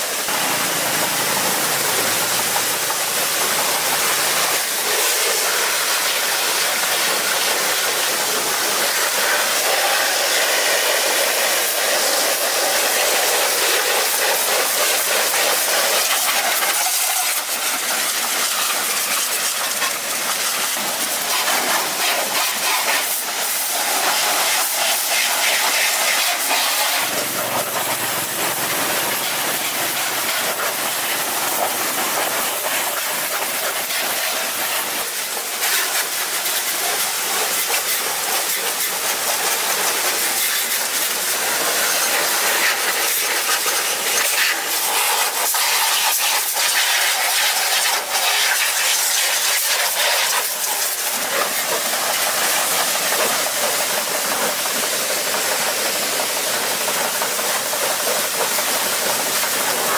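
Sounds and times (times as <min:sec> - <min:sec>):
steady loud hiss: 0:00.0 - 0:59.9.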